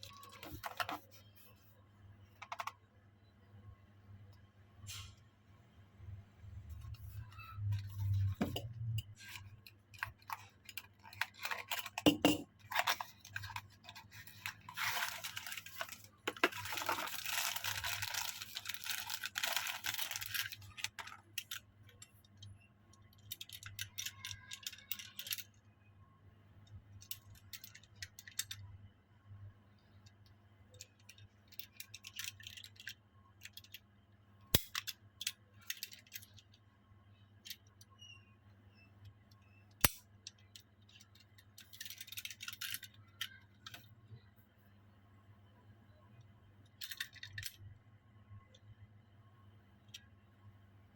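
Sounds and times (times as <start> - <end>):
toy packaging clicks and taps: 2.4 - 2.8, 7.4 - 25.6
packaging rustling and crinkling: 10.0 - 21.2.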